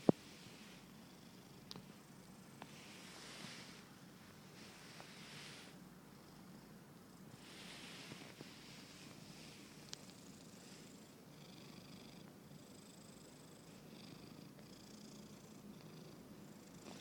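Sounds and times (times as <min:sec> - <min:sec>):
cat snoring softly: 0:04.6 - 0:17.0.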